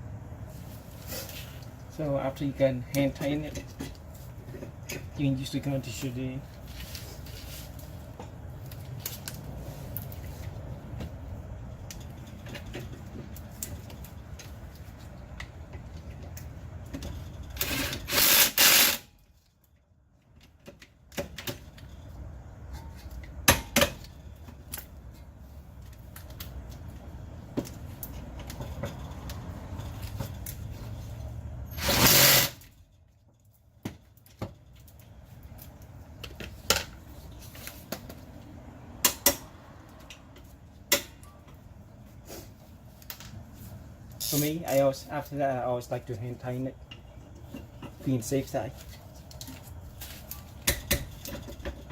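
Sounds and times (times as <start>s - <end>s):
tools clicking and knocking: 50.4s - 51.9s.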